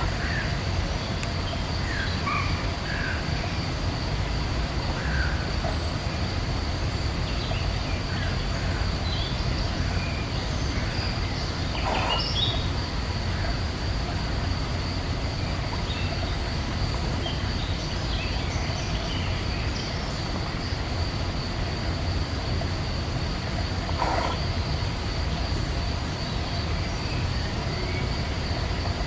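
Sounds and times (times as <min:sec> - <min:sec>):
birds chirping: 0:07.3 - 0:12.8, 0:23.8 - 0:24.6.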